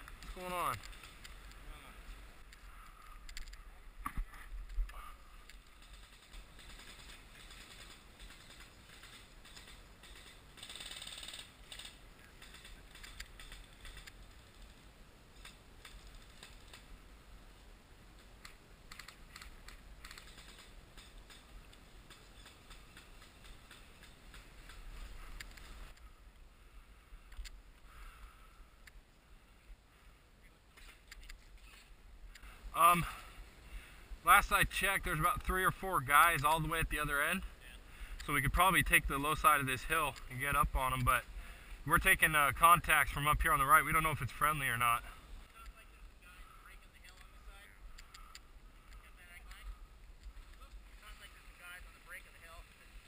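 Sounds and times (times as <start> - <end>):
small clicks and rustling: 0.0 - 17.0, 18.1 - 26.1, 27.2 - 27.9, 30.7 - 32.5, 46.9 - 53.0.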